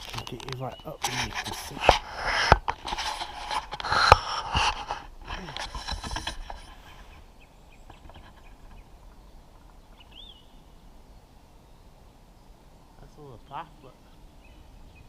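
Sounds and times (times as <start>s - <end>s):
twigs snapping: 0.0s - 6.7s
footsteps through brush: 0.0s - 10.4s
bird whistled call: 10.0s - 10.8s.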